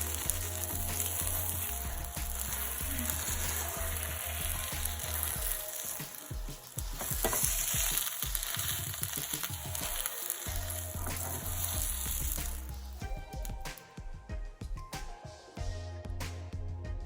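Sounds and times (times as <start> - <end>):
omelette sizzling in a frying pan: 7.0 - 12.3.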